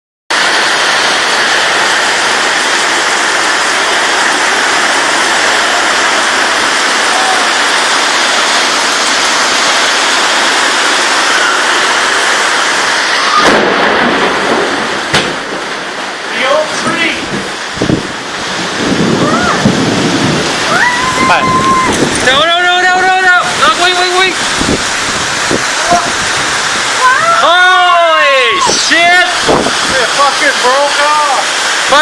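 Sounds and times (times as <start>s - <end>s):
heavy rain pouring: 0.3s - 32.0s
sudden thump: 13.4s - 16.0s.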